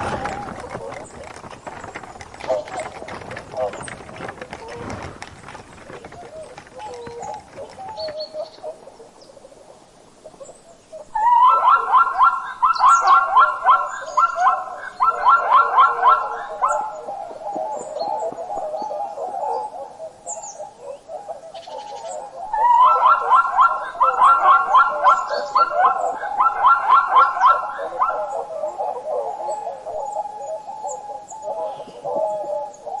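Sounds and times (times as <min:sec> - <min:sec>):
rapid repeated animal calls: 0:00.0 - 0:08.9
animals chirping and chattering: 0:00.0 - 0:09.0, 0:11.2 - 0:33.0.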